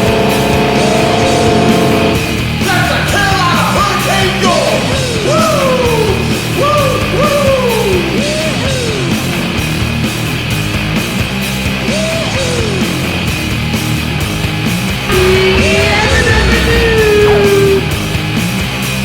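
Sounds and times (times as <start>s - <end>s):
punk rock band playing: 0.0s - 19.0s
yelled vocal whoops: 5.1s - 8.6s, 15.1s - 18.0s.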